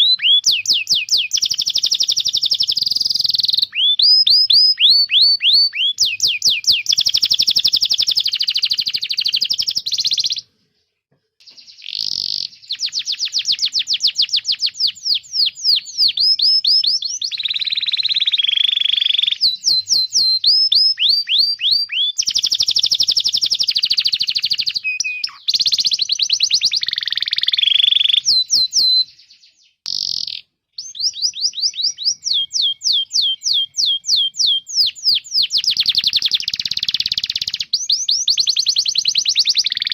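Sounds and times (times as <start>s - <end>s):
canary singing trills: 0.0s - 10.6s, 11.4s - 39.9s.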